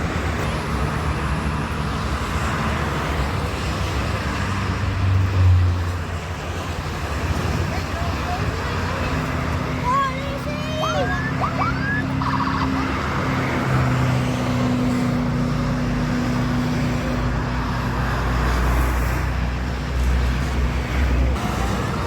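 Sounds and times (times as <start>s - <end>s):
deep traffic rumble: 0.0s - 22.0s
highway traffic: 0.0s - 22.0s.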